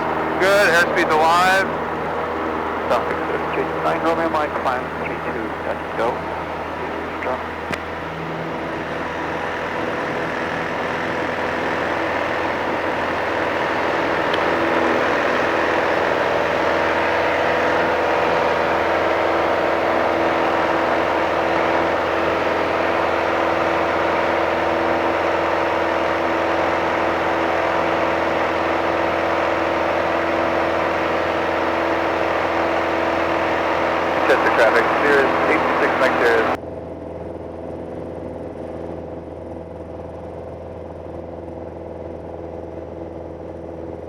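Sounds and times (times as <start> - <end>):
light aircraft engine drone: 0.0 - 44.0.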